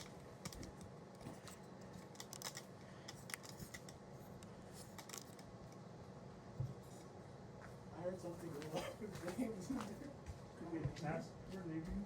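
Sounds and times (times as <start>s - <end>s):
sharp clicks and crackles: 0.0s - 5.8s
microwave oven humming: 0.0s - 12.0s.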